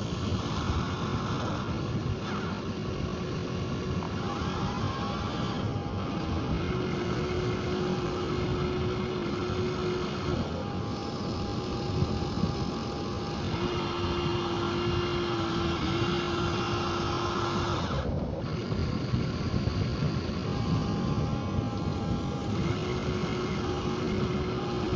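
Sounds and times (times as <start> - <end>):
electric motor and gearbox whine: 0.0 - 24.9
noisy rattle: 0.0 - 24.9.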